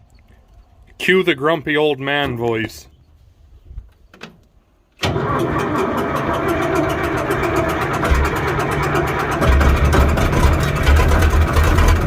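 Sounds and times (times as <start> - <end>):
tractor diesel engine clattering: 5.1 - 12.0.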